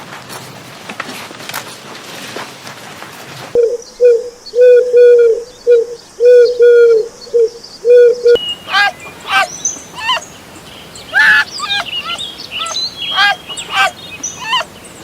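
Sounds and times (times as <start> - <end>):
noisy hiss: 0.0 - 15.0
bird cooing calls: 3.6 - 15.0.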